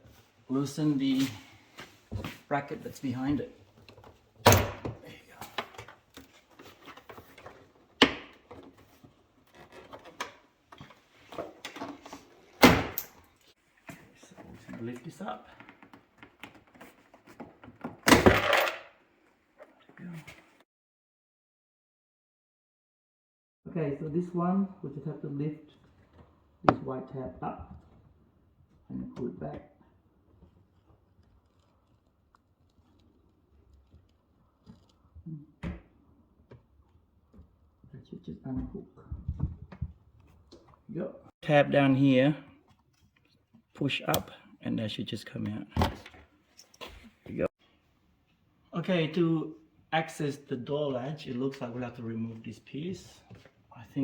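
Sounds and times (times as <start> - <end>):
plastic rubbing and scraping: 30.0 - 35.3.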